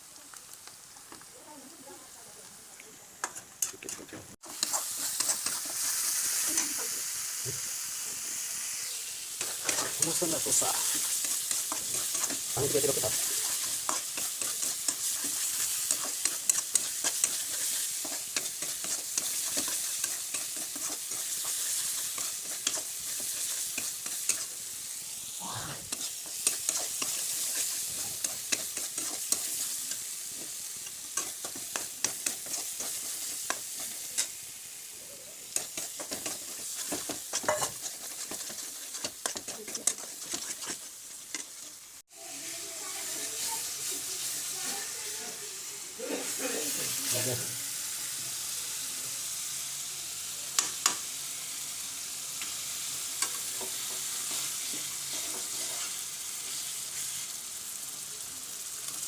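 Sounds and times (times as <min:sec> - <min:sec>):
food sizzling in a pan: 0:00.0 - 0:59.0
utensil scraping a pan: 0:09.4 - 0:24.5, 0:35.5 - 0:41.8, 0:53.6 - 0:56.0.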